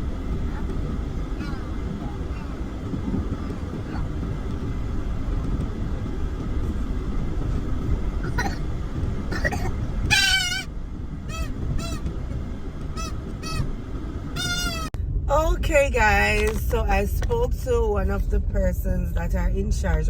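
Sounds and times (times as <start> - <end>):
low rumble: 0.0 - 20.0
animal calling: 0.4 - 4.3, 9.3 - 10.7, 11.3 - 12.1, 13.0 - 13.7, 14.4 - 14.9.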